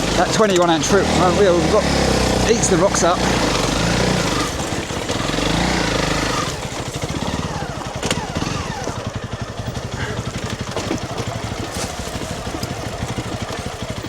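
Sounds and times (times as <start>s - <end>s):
motorcycle engine chugging: 0.0s - 14.0s
tyres knocking on rocks: 10.4s - 14.0s.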